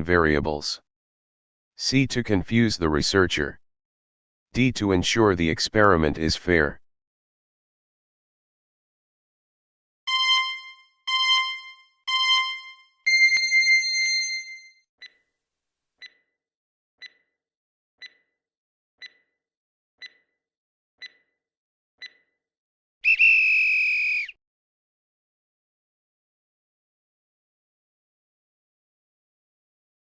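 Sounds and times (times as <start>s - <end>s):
timer ticking: 10.1s - 13.6s, 16.0s - 16.3s, 17.0s - 17.3s, 18.0s - 18.3s, 19.0s - 19.4s, 20.0s - 20.4s, 21.0s - 21.3s, 22.0s - 22.3s
loud alarm tone: 10.1s - 14.7s
short beeps: 10.1s - 14.7s.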